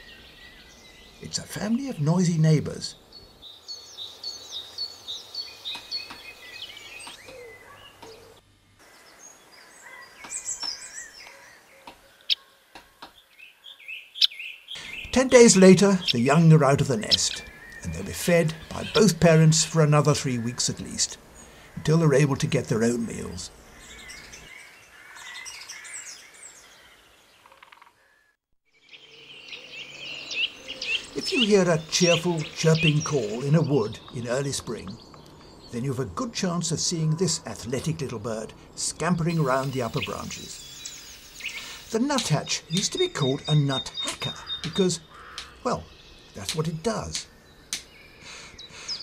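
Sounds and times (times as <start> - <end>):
birds chirping: 0.0 - 49.0
chicks chirping in nest: 14.8 - 19.8, 30.2 - 35.1, 35.7 - 45.8
woodpecker short high calls: 39.2 - 47.4.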